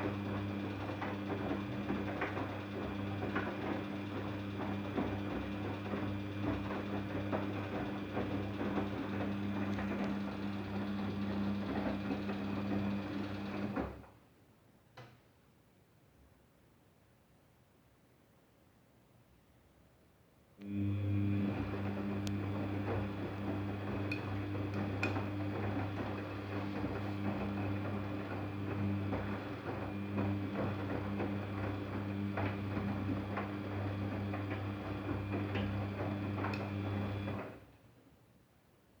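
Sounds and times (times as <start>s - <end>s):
washing machine motor hum: 0.0s - 14.1s, 20.6s - 37.7s.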